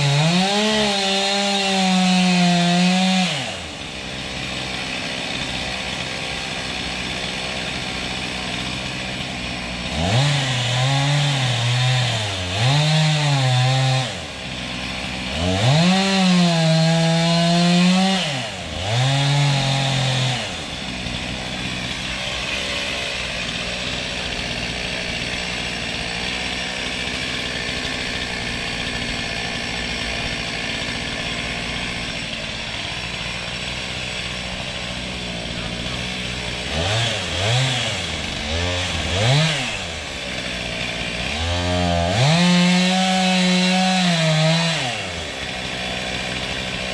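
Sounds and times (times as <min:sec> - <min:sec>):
chainsaw revving cutting wood: 0:00.0 - 0:46.9
steady engine drone: 0:27.8 - 0:41.2.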